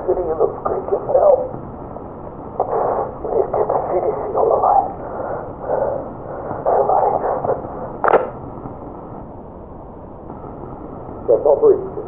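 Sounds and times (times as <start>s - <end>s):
muffled voice over radio: 0.0s - 1.5s, 2.6s - 5.0s, 5.6s - 8.2s, 11.3s - 12.0s
radio hiss: 0.0s - 1.6s, 2.4s - 8.4s, 10.3s - 12.0s
sharp crack: 8.0s - 8.4s.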